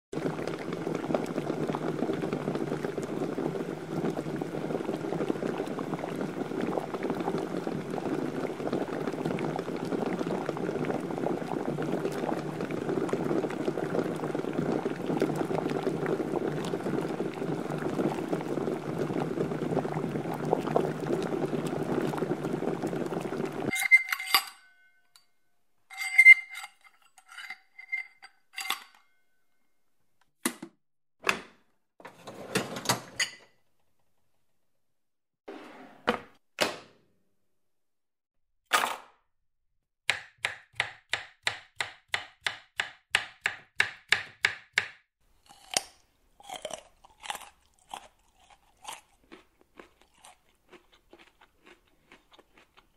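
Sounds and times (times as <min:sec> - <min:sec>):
water boiling: 0:00.1 - 0:23.8
tableware clinking: 0:23.7 - 0:29.3.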